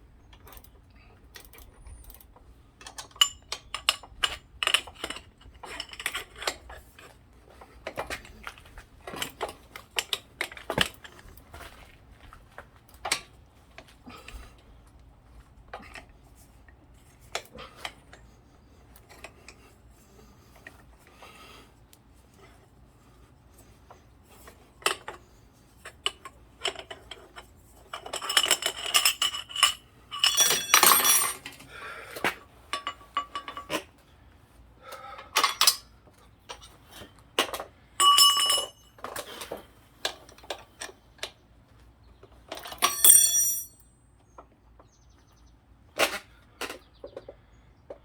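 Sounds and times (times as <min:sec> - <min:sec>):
metal tools clicking and knocking: 0:00.3 - 0:07.1, 0:25.8 - 0:31.7, 0:32.7 - 0:33.9, 0:35.2 - 0:35.9, 0:37.4 - 0:41.3, 0:42.5 - 0:43.9
ringing metal clanks: 0:28.4 - 0:31.5, 0:38.0 - 0:39.0, 0:42.6 - 0:43.9.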